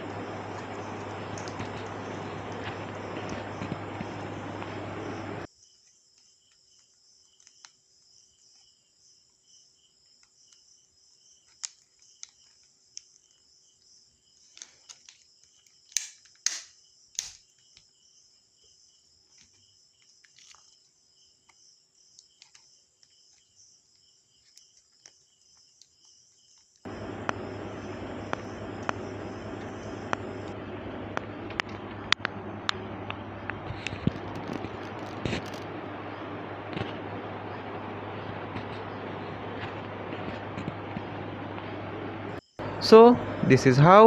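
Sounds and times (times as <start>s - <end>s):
sharp clicks: 0.0s - 5.5s, 15.9s - 17.4s, 26.9s - 42.4s
steady hiss: 0.0s - 5.5s, 26.9s - 44.0s
crickets chirring: 0.0s - 44.0s
laptop battery handling clicks: 15.9s - 17.4s.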